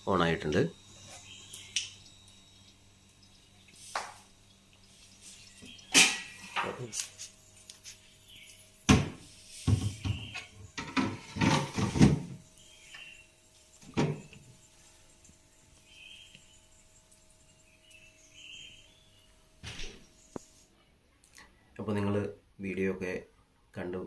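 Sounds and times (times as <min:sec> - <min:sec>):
objects knocking and clattering: 0:08.9 - 0:12.4, 0:13.8 - 0:14.4.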